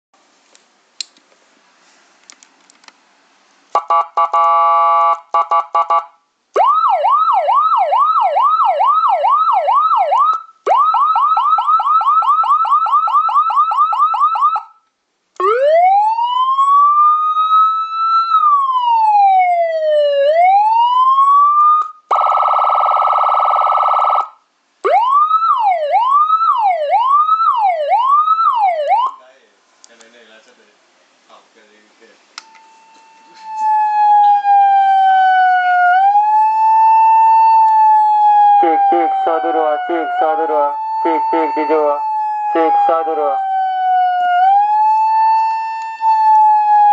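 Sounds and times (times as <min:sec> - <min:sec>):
electronic siren: 0:03.8 - 0:14.7, 0:15.4 - 0:29.2, 0:32.5 - 0:46.9.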